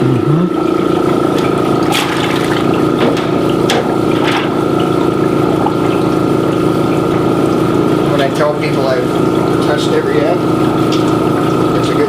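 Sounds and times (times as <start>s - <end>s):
air bubbling through water: 0.0s - 8.1s
air compressor humming: 0.0s - 12.0s.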